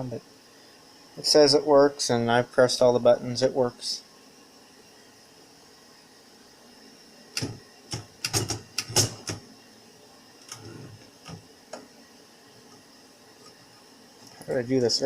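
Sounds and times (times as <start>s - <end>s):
typewriter keys clacking: 7.4s - 9.4s.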